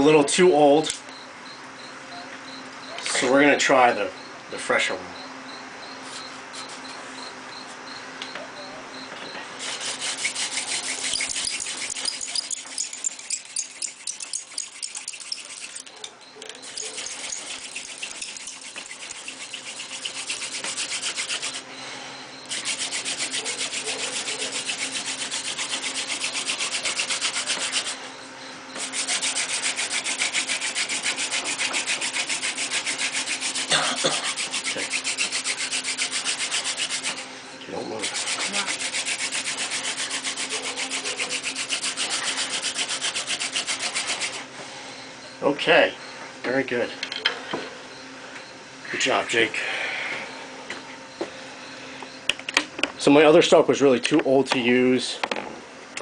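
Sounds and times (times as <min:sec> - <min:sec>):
wooden spindle rasping on board: 0:09.6 - 0:16.0, 0:16.6 - 0:21.7, 0:22.5 - 0:28.0, 0:28.8 - 0:37.3, 0:38.0 - 0:44.5.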